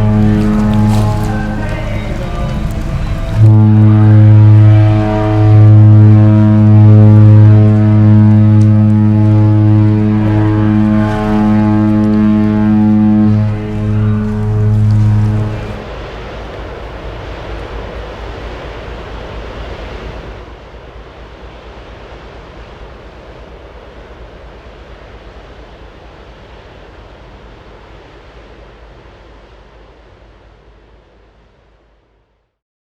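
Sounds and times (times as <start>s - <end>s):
low rumble: 0.0s - 25.6s
wind noise on microphone: 0.0s - 31.6s.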